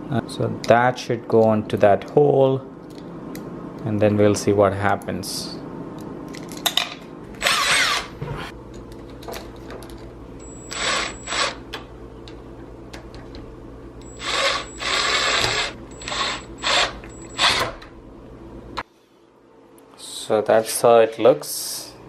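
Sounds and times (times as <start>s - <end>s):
power drill whining: 7.4s - 8.1s, 10.4s - 11.6s, 14.0s - 17.8s.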